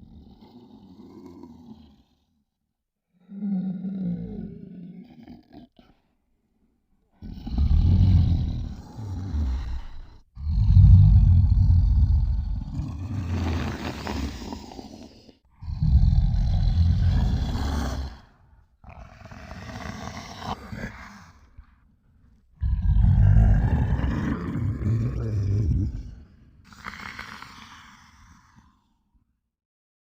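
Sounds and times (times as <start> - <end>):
creature growling roars: 3.2 - 6.0, 7.2 - 21.8, 22.4 - 28.9.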